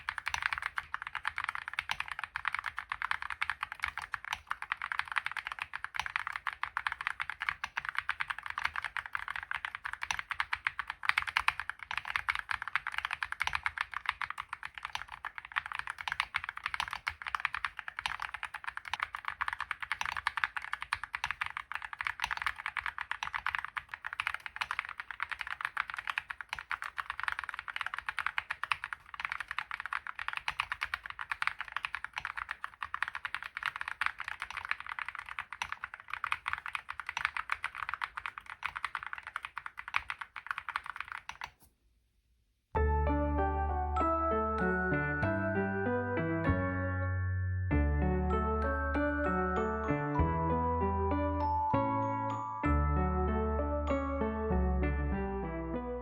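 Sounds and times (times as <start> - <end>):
fast typing on mechanical keyboard: 0.0 - 41.7.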